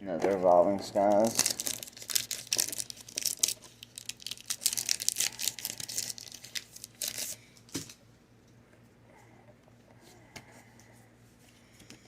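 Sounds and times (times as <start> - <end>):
foil wrapper crinkling and tearing: 1.0 - 7.4.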